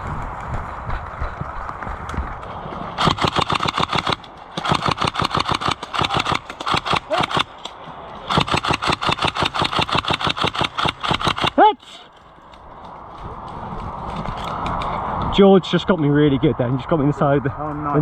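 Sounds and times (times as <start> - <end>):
airsoft gun firing bursts: 3.0 - 11.7.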